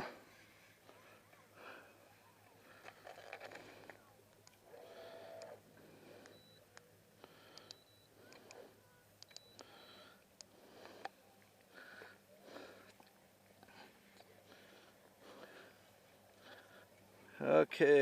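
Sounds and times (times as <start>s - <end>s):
short high beeps: 6.3s - 6.6s, 9.3s - 10.1s
faint clicks: 7.5s - 8.6s, 9.2s - 9.7s.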